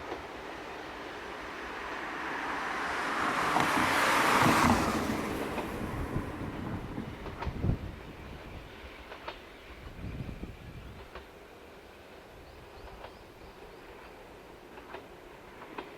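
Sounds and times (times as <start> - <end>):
vehicle passing by: 1.7 - 6.5.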